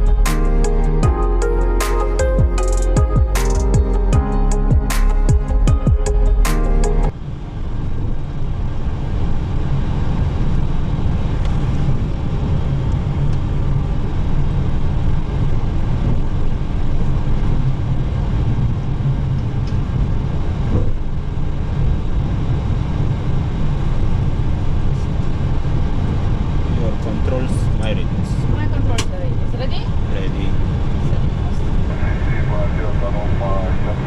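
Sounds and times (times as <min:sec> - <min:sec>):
jet engines rumbling: 0:17.8 - 0:34.0.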